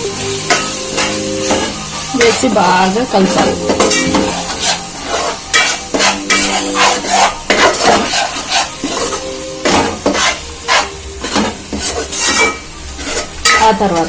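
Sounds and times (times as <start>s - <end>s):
food sizzling in a pan: 0.0s - 14.0s
utensil scraping a pan: 3.3s - 14.0s.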